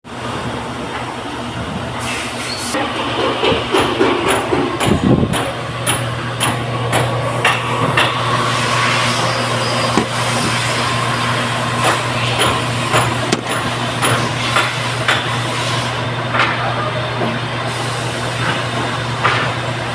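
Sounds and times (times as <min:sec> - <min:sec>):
welding arc buzzing: 0:07.4 - 0:15.8.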